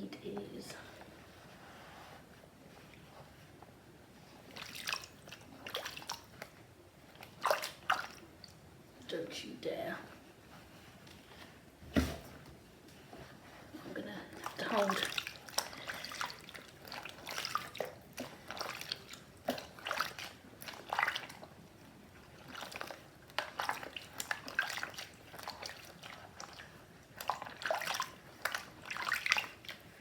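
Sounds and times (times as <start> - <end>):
water sloshing and splashing: 4.2 - 8.8, 13.4 - 30.0.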